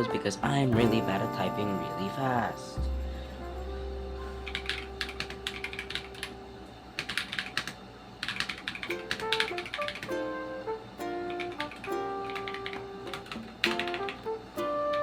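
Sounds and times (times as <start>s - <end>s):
background music with plucked notes: 0.0s - 6.5s, 8.9s - 15.0s
mechanical keyboard typing: 4.5s - 6.3s, 7.0s - 10.1s, 11.5s - 14.2s.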